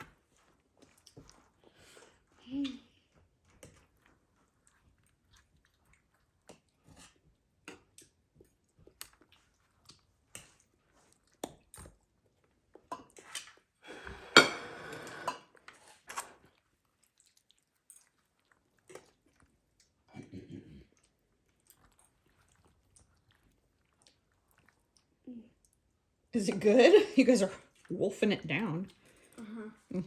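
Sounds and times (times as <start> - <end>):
chewing: 0.0 - 14.2, 14.9 - 26.2, 27.6 - 27.9
dishes clattering: 14.2 - 15.5
forks tapping on dishes: 14.3 - 15.4.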